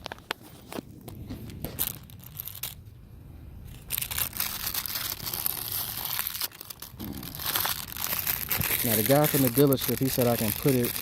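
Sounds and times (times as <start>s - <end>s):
plastic packaging tearing and crinkling: 1.6s - 2.8s, 3.7s - 11.0s.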